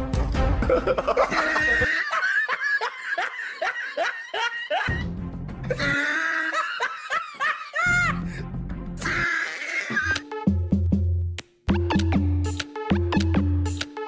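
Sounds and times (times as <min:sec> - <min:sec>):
comic chuckling sound effect: 0:00.6 - 0:05.0.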